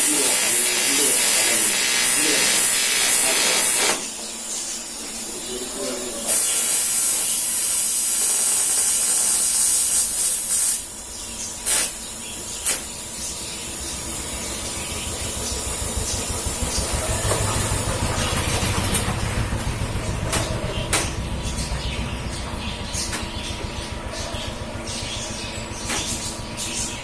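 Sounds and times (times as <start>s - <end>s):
welding arc hissing: 0.0s - 4.0s, 6.0s - 14.6s
pulsing motor-like rumble: 13.0s - 27.0s.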